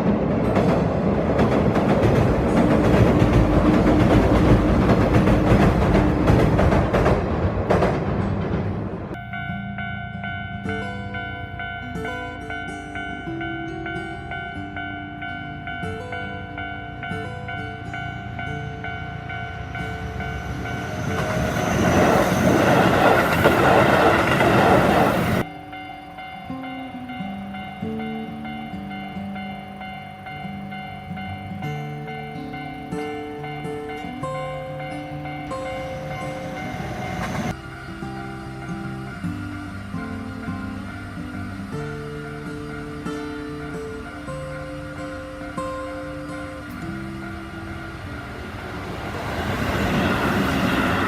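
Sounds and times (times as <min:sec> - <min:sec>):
train wheels clattering: 0:00.0 - 0:09.2, 0:19.6 - 0:25.5
train hum: 0:00.0 - 0:51.0.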